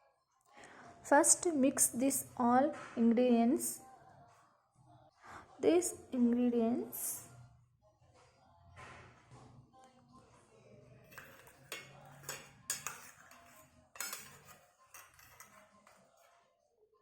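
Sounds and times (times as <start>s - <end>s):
spoon clinking against bowl: 11.1s - 16.2s.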